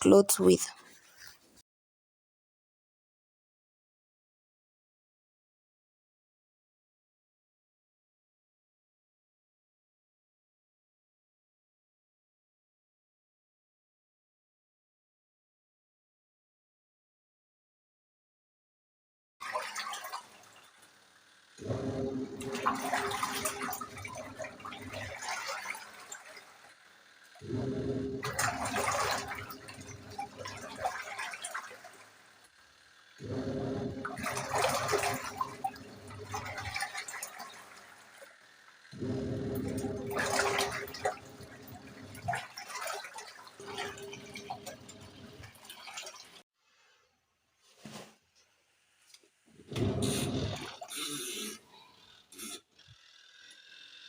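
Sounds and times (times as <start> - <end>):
washing machine motor humming: 21.5 - 32.2, 33.0 - 38.2, 38.9 - 46.2, 49.6 - 51.0
water sloshing: 21.6 - 26.6, 27.4 - 32.1, 33.2 - 38.2, 39.0 - 46.4.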